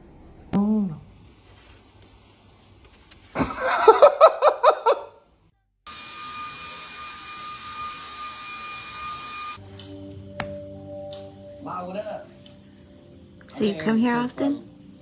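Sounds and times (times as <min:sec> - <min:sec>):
rhythmic laughter: 0:03.4 - 0:05.1
whirring noise with high whine: 0:05.9 - 0:09.6.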